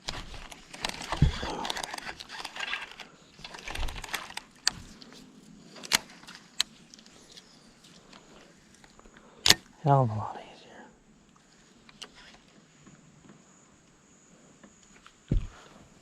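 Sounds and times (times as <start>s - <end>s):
fishing gear rattling and rustling: 0.0s - 9.4s
sharp clicks: 9.1s - 9.7s.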